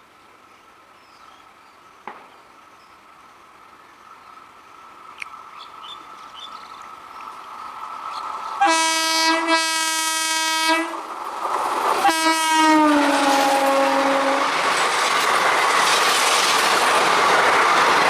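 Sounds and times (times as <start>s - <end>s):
train rumbling and rattling: 3.5s - 18.0s
train horn blasts: 8.6s - 11.0s, 12.0s - 14.6s.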